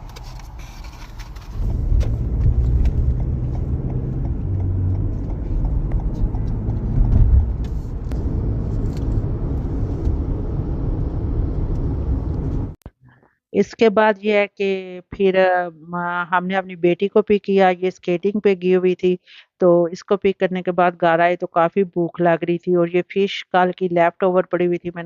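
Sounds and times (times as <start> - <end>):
car engine and road rumble: 0.0 - 12.8.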